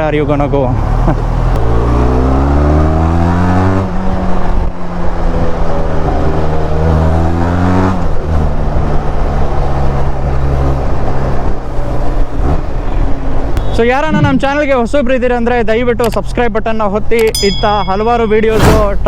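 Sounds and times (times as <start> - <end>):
motorcycle engine accelerating: 0.7 - 14.4.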